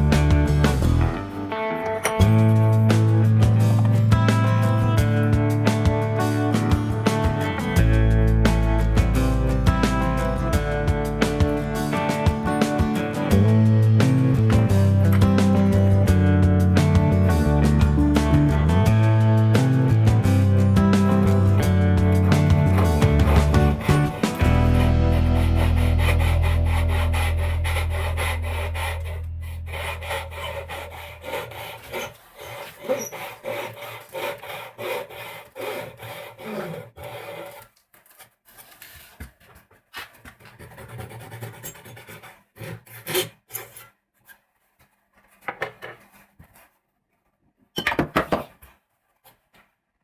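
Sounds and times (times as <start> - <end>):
sandpaper rubbing on wood: 22.1 - 37.6.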